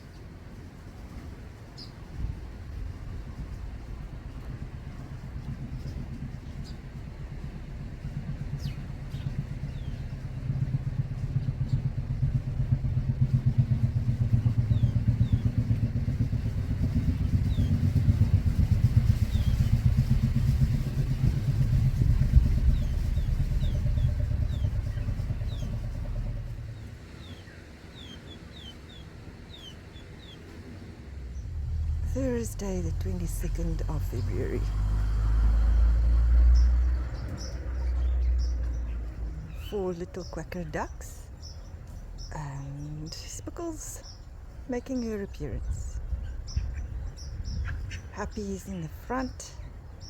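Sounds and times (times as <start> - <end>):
motorcycle engine rumbling: 0.0 - 50.0
small birds chirping: 0.0 - 50.0.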